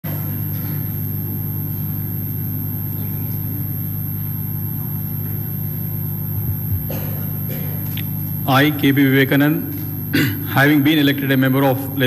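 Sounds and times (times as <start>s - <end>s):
steady low hum: 0.1s - 12.0s.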